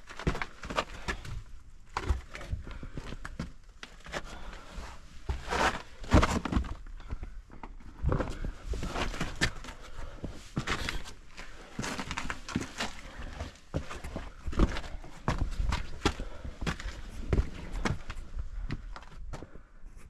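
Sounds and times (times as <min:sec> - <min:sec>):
footsteps scuffing: 0:08.1 - 0:19.5.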